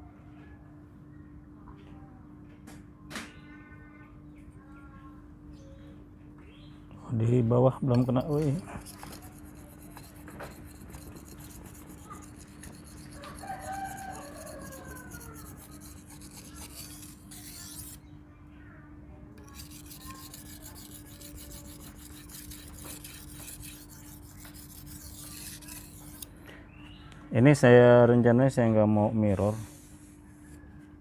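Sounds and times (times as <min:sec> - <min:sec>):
knife rubbing on whetstone: 0:07.8 - 0:18.0, 0:19.4 - 0:26.3
rooster crowing: 0:13.0 - 0:15.8.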